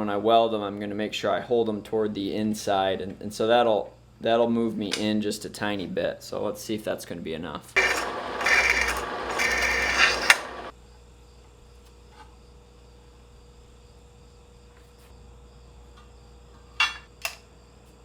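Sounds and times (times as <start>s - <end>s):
faint shop hum: 7.7s - 18.0s
harsh metal rasping: 7.8s - 10.7s
sharp clacks: 7.8s - 10.7s.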